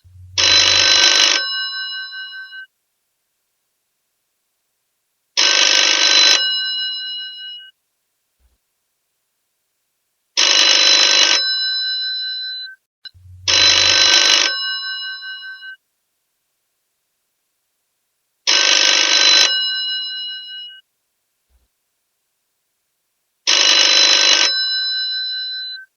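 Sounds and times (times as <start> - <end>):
telephone bell ringing: 0.4 - 2.7, 5.4 - 7.6, 10.4 - 12.7, 13.5 - 15.8, 18.5 - 20.8, 23.5 - 25.8.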